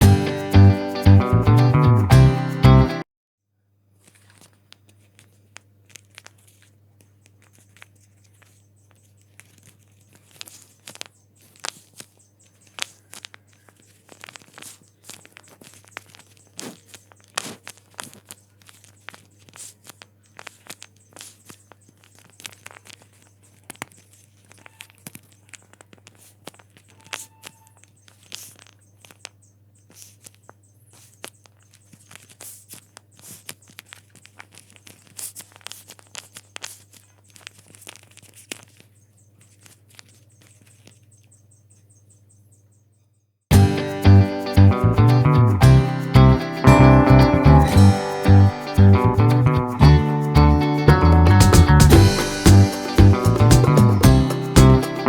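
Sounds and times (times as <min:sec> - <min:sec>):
paper crinkling and rustling: 0:03.9 - 0:42.4.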